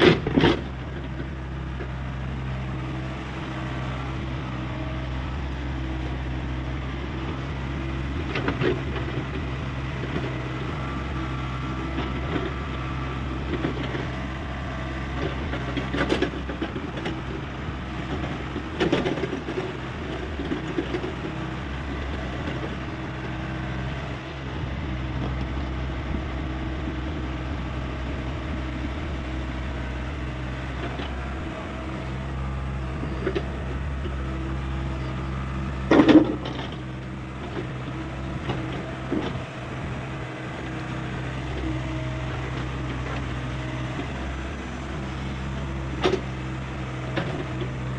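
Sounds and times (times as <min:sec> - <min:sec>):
diesel engine running: 0:00.0 - 0:47.9.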